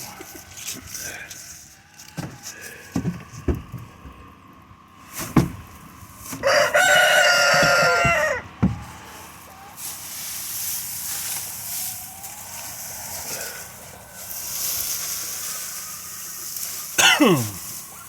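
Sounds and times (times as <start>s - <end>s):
rooster crowing: 6.3s - 10.0s, 11.5s - 18.0s
steady high hiss: 9.4s - 18.0s.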